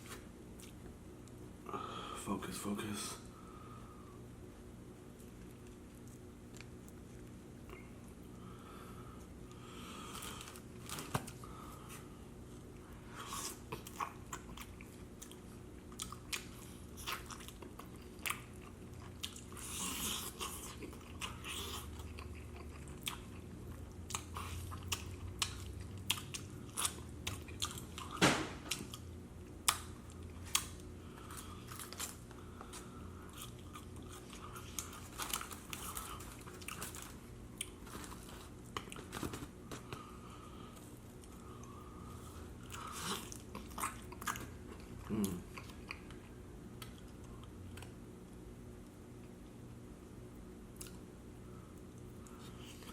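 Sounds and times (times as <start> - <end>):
wet smacking and chewing: 5.1 - 8.3, 12.7 - 40.1, 42.6 - 48.0.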